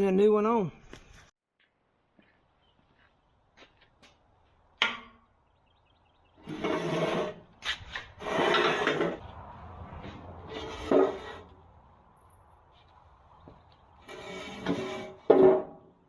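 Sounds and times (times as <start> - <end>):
steel bucket scraping: 6.4 - 9.2, 10.4 - 11.5, 14.0 - 15.7.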